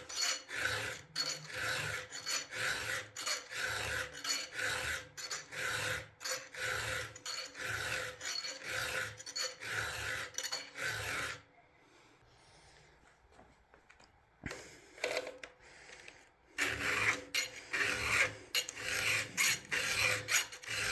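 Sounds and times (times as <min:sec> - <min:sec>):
file filing chainsaw chain: 0:00.0 - 0:11.5, 0:16.6 - 0:20.9.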